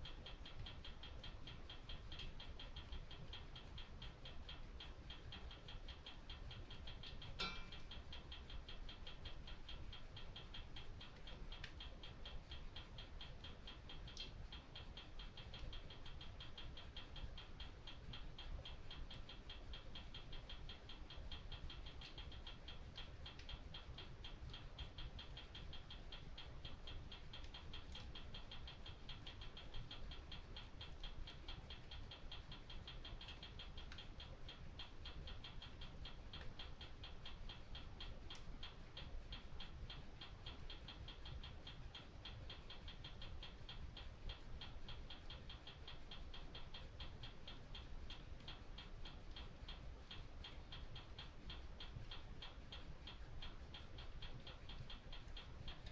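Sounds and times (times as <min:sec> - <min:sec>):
fire crackling in fireplace: 0:00.0 - 0:55.9.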